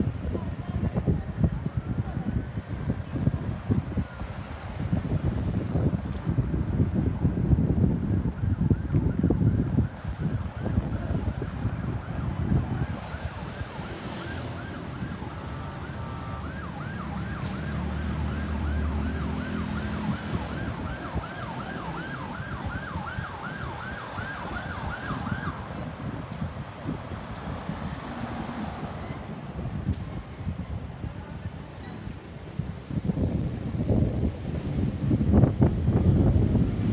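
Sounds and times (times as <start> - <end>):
road noise: 0.0 - 36.9
wind on microphone: 0.0 - 36.9
ambulance siren yelping: 8.2 - 29.1.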